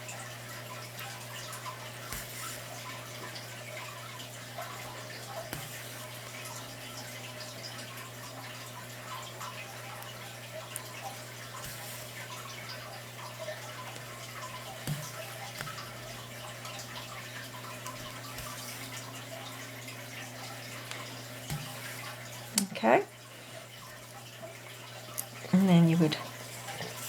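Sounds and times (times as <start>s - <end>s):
low electrical hum: 0.0s - 27.0s
yarn drawn through plastic canvas: 2.0s - 3.0s, 4.8s - 6.9s, 11.6s - 12.6s, 13.8s - 19.4s, 20.8s - 22.2s, 26.6s - 27.0s.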